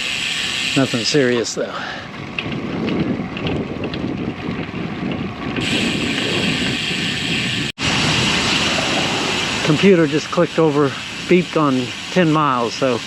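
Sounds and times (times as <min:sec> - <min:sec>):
bicycle tyres on gravel: 0:00.0 - 0:13.0
wind hiss on microphone: 0:05.6 - 0:10.0.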